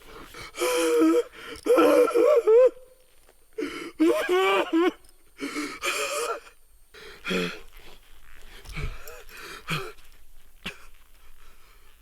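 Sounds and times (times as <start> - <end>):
person gasping and wheezing: 0.2 - 2.8, 8.6 - 11.0.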